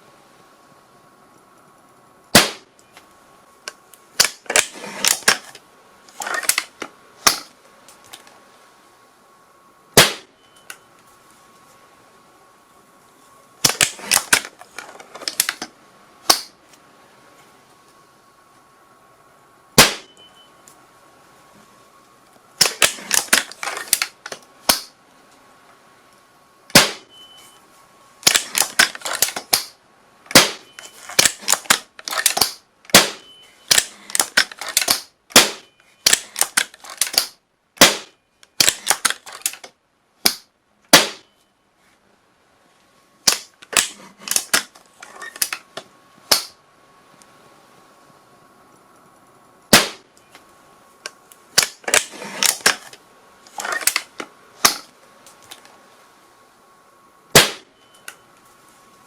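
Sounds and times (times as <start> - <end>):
gunshots: 2.4 - 2.7, 10.0 - 10.3, 19.8 - 20.1, 26.7 - 27.1, 30.3 - 31.6, 32.2 - 36.6, 37.2 - 39.1, 40.3 - 41.3, 49.7 - 50.1, 57.4 - 57.7.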